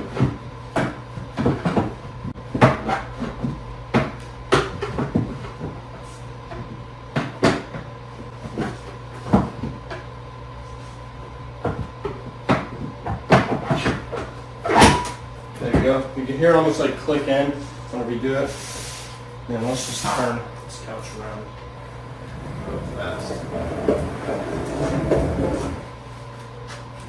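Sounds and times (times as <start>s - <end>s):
furniture knocks and clacks: 0.0s - 5.8s.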